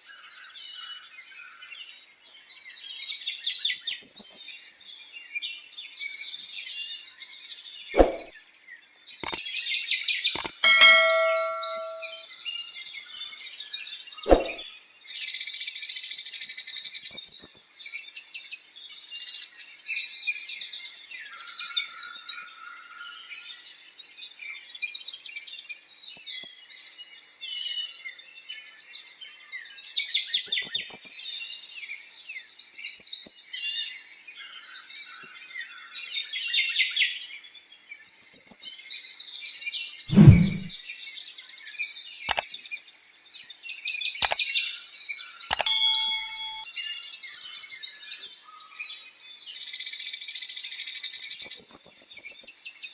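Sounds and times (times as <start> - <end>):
low thump: 40.1 - 40.7.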